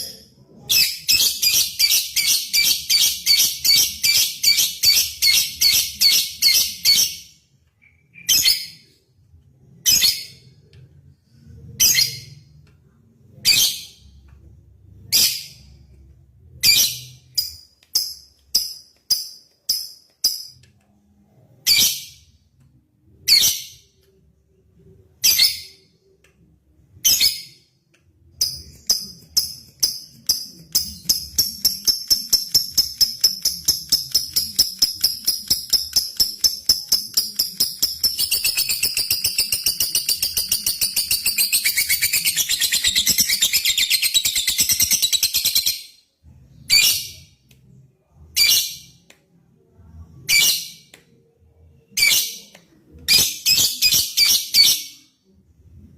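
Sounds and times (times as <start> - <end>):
lovebird chirping: 0.0 - 8.9, 28.4 - 46.0.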